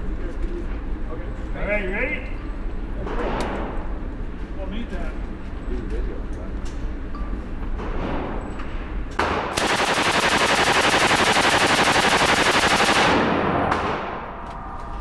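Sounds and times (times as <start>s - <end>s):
gunfire echo indoors: 9.2s - 14.6s
machine gun firing bursts: 9.4s - 13.6s.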